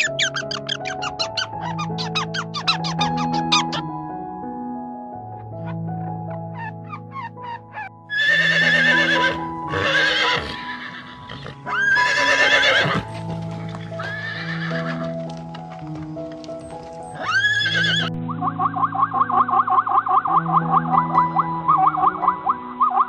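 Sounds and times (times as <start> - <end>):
background music with held notes: 0.0 - 23.0
horse neighing: 6.6 - 13.1, 13.8 - 15.0, 17.2 - 18.1.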